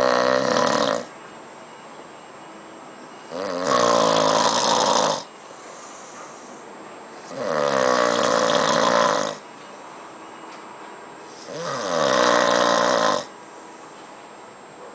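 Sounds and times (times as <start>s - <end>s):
loud snoring: 0.0s - 1.1s, 3.3s - 5.3s, 7.2s - 9.4s, 11.3s - 13.3s.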